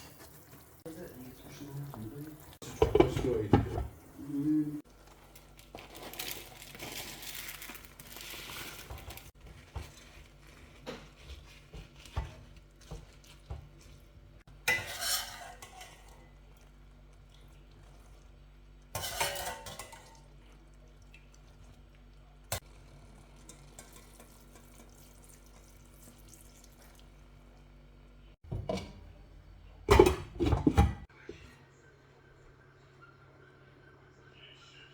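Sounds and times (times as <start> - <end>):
metal utensils clattering and scraping: 14.6 - 16.3, 19.0 - 20.3.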